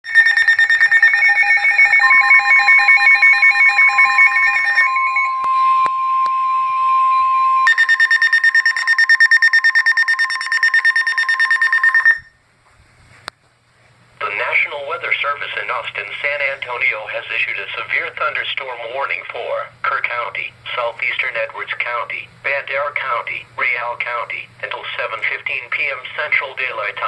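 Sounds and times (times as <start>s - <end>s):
pulsing electronic alarm: 0.0s - 12.4s
steady warning tone: 0.0s - 12.4s.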